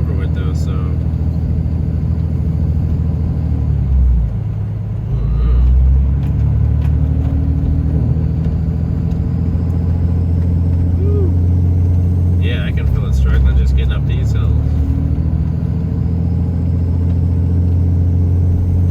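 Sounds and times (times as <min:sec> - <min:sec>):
diesel truck engine under load: 0:00.0 - 0:18.9.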